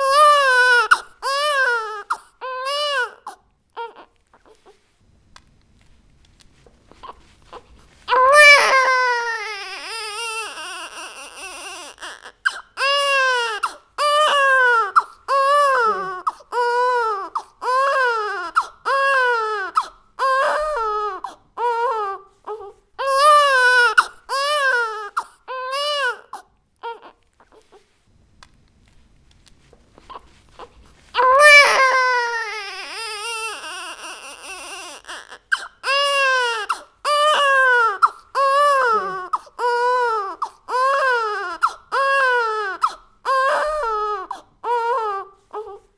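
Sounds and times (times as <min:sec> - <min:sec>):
baby crying: 0:00.0 - 0:04.7, 0:08.1 - 0:27.7, 0:30.6 - 0:45.9.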